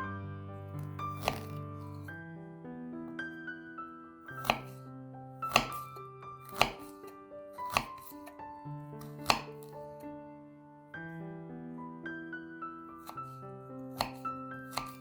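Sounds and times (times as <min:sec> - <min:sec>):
soft piano music: 0:00.0 - 0:15.0
knife chopping on cutting board: 0:00.8 - 0:02.1, 0:04.3 - 0:04.8, 0:05.4 - 0:08.4, 0:09.0 - 0:10.0, 0:13.0 - 0:15.0.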